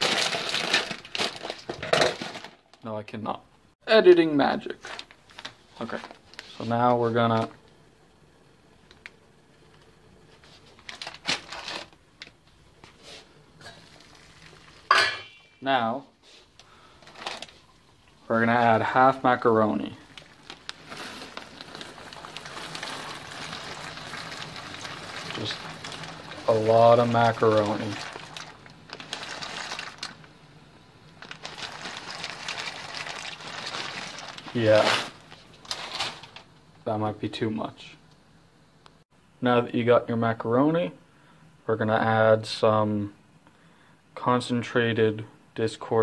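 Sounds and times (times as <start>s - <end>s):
dry pasta pouring into a pot: 0.0s - 2.3s, 13.6s - 14.9s, 18.5s - 30.3s, 31.2s - 36.4s
pots and utensils clattering: 14.8s - 15.6s.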